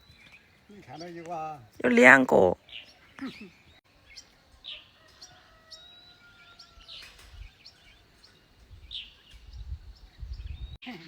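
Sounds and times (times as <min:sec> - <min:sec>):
birds chirping: 0:01.8 - 0:04.2.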